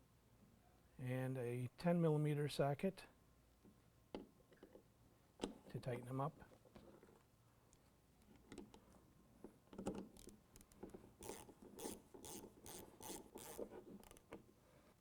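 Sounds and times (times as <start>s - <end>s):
ratchet wrench ratcheting: 11.2s - 14.2s.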